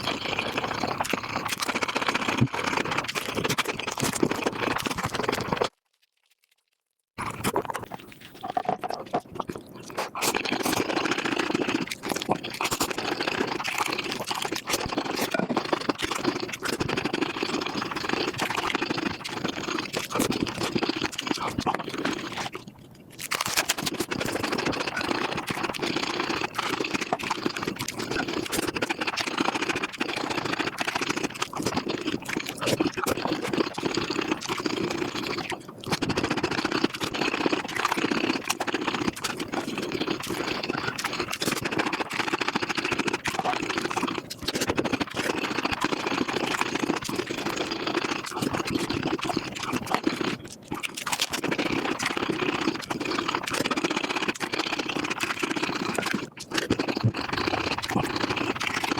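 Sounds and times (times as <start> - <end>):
sped-up chewing crunches and smacks: 0.0 - 58.9.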